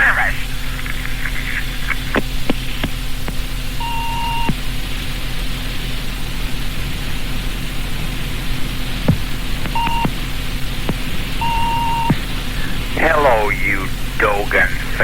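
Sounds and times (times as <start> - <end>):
line hiss and mains hum: 0.0 - 15.0
two-tone electronic beep: 3.8 - 4.6, 9.7 - 10.1, 11.4 - 12.3
sharp clicks: 9.1 - 10.2.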